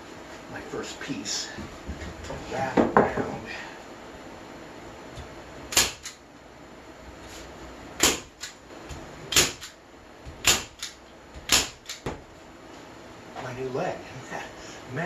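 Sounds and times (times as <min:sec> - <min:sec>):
staple gun snapping: 0:05.7 - 0:06.2, 0:10.4 - 0:12.0.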